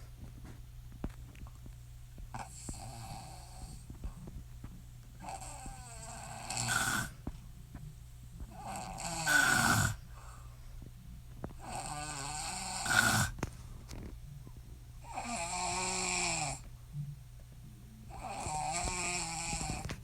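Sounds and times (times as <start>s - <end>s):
woman snoring: 2.4s - 3.8s, 5.2s - 7.2s, 8.5s - 10.0s, 11.6s - 13.4s, 15.0s - 16.6s, 18.1s - 20.0s.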